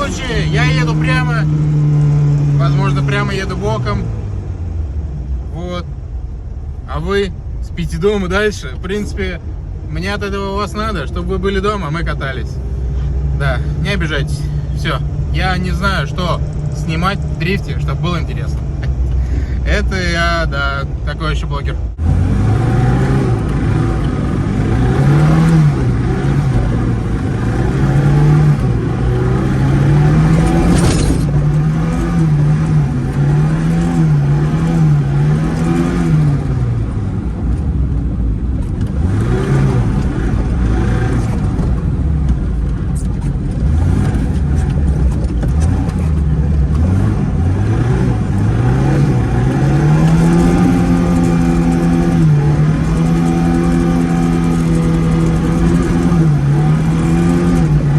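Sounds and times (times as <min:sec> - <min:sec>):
car engine revving: 0:00.0 - 0:57.9.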